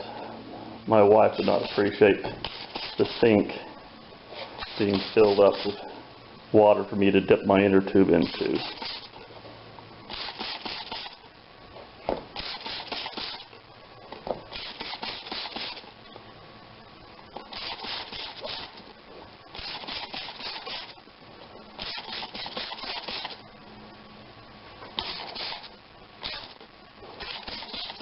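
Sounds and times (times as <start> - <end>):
rubbing or scrubbing strokes: 4.3 - 5.8.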